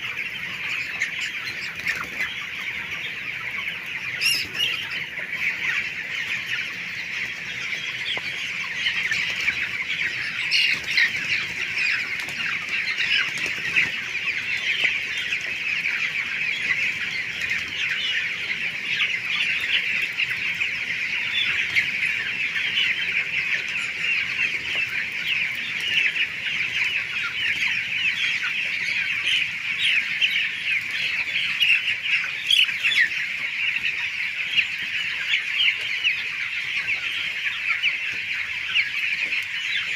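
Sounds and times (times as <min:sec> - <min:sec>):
chickens clucking and peeping: 0:00.0 - 0:39.9.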